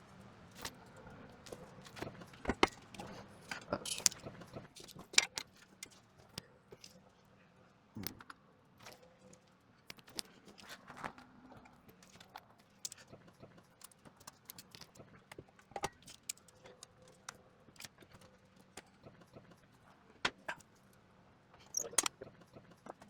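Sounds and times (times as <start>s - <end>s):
metallic clinks and clicks: 1.9s - 6.0s.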